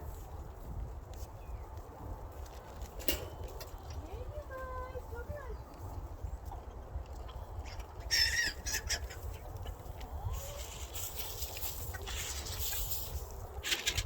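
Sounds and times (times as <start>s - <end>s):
rustling noise: 0.0s - 4.8s, 10.3s - 14.0s
chickens clucking: 5.7s - 13.0s.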